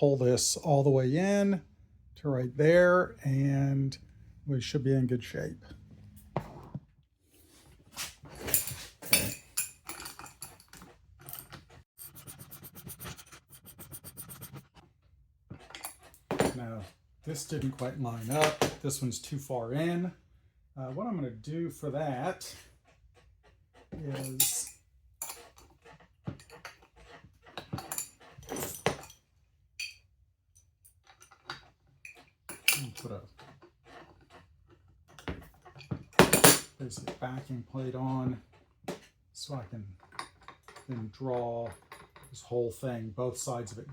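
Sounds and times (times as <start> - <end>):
metal tools clinking and knocking: 8.2 - 11.8, 24.0 - 25.7, 27.6 - 29.2, 29.8 - 30.1, 31.0 - 33.6, 35.2 - 37.2, 40.0 - 42.8
rubbing scraping strokes: 12.0 - 14.8.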